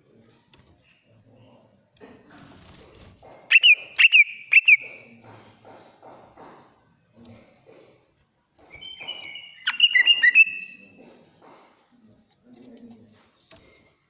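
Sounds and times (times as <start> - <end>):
bird whistling shrill notes: 3.5 - 4.8, 8.7 - 10.8.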